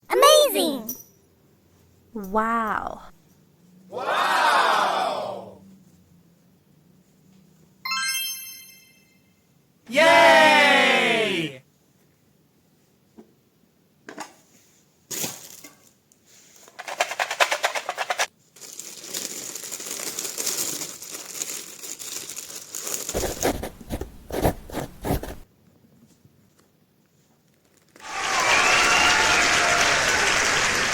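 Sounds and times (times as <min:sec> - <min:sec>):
packing material crinkling and tearing: 0:18.5 - 0:25.4, 0:27.5 - 0:28.0
applause and cheering: 0:28.0 - 0:30.9.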